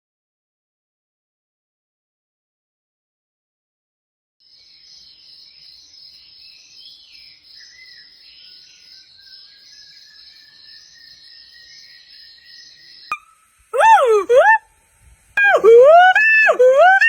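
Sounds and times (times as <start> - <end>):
faint chirps: 13.1 - 14.6, 15.4 - 17.0.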